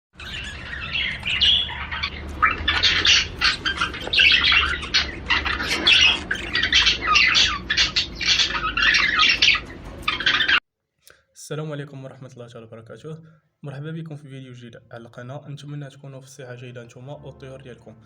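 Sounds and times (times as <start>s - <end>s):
caged birds squawking and chirping: 0.2s - 10.6s.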